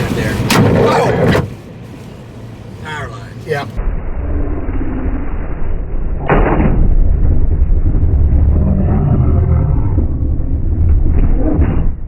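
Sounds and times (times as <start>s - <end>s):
sharp crack of impact: 0.5s - 1.5s, 6.1s - 7.5s
loud low rumbling: 3.7s - 12.0s.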